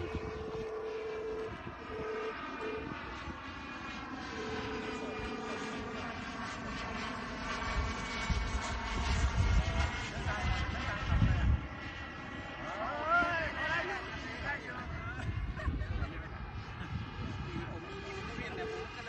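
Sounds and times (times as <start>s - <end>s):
steady tone: 0.0s - 8.4s
model jet engine whine: 0.0s - 19.0s.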